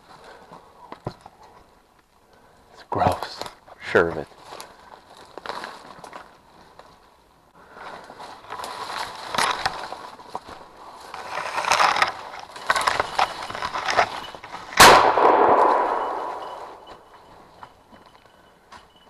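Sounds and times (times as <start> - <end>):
crashing through brush and leaves: 8.3 - 17.0
shotgun shot: 14.8 - 16.8.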